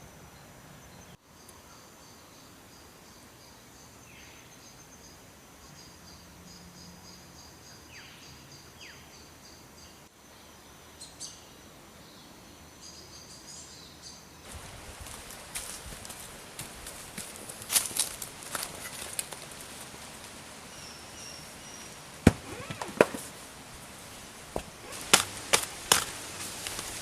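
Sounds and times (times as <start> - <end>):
high-pitched insect chorus: 12.5 - 27.0.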